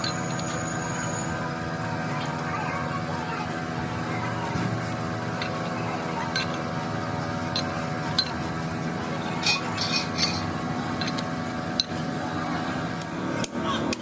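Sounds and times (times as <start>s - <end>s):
workshop machine humming: 0.0s - 14.0s
metallic clinks of tools: 9.4s - 11.9s.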